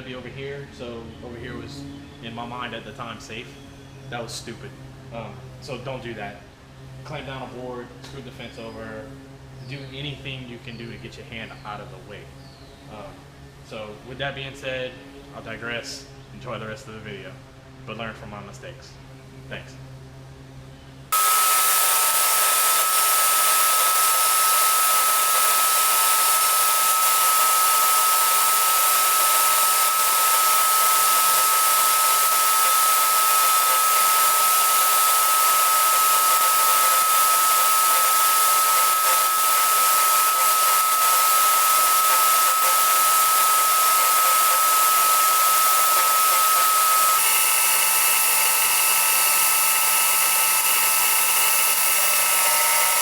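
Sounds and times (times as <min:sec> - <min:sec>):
power tool whining: 0:21.1 - 0:53.0.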